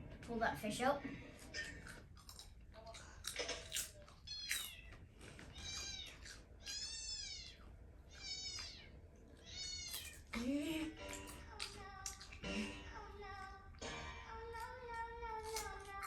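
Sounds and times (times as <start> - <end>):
cat meowing: 4.2 - 10.4.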